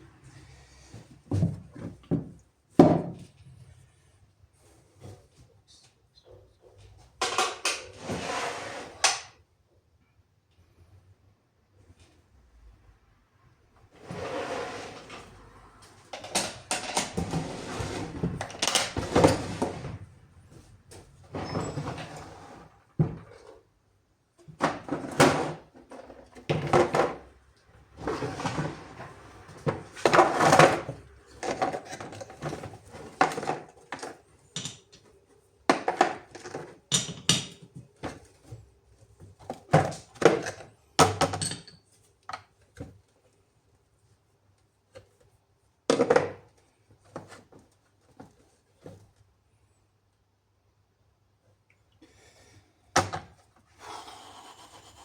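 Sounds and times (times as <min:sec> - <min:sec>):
knocks and clatter of tools: 0:07.2 - 0:07.9, 0:16.2 - 0:17.4.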